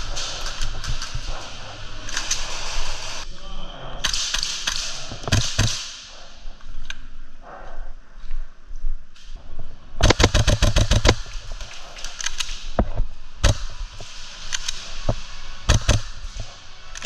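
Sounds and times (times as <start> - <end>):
airsoft guns firing: 4.1 - 6.4, 10.0 - 12.7, 13.4 - 17.0.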